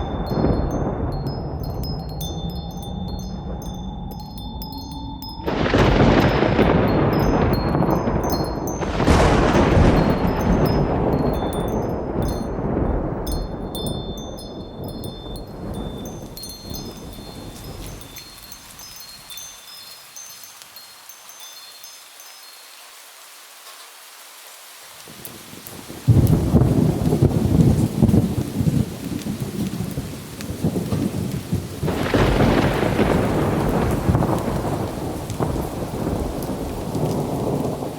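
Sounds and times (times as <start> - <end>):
rolling thunderclap: 0.0 - 4.0, 5.4 - 18.4, 26.1 - 37.9
wind chimes tinkling: 0.0 - 22.9, 31.8 - 37.9
faint hiss: 15.7 - 26.2.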